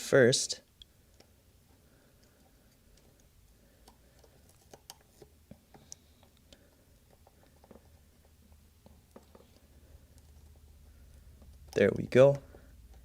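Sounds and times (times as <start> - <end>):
small clicks and ticks: 0.7 - 13.0.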